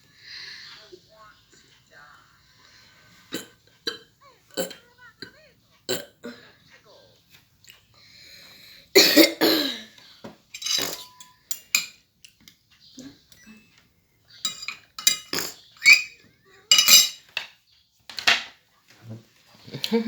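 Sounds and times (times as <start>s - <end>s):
cutlery clinking against dishes: 10.4s - 12.6s, 14.4s - 18.6s.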